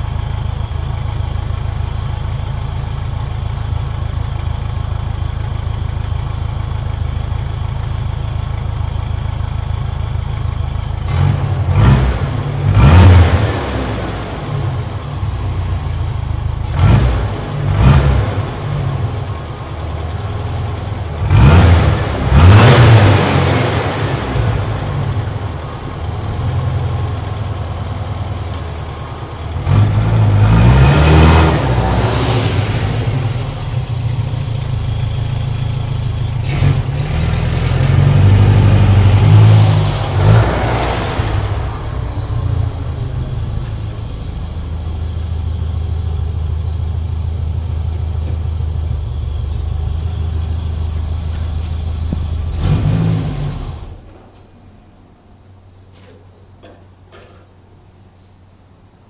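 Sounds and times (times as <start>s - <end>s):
trike engine idling and revving: 0.0s - 54.5s.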